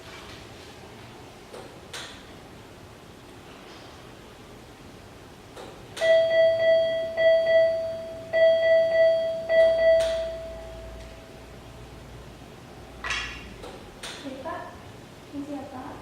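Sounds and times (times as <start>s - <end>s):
electronic alarm beeps: 6.0s - 11.0s.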